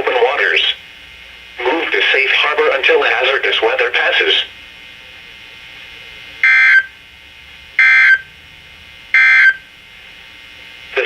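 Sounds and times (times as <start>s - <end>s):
faint radio hiss: 0.0s - 6.5s, 9.9s - 11.0s
digital data tone bursts: 6.4s - 7.0s, 7.8s - 8.3s, 9.1s - 9.7s.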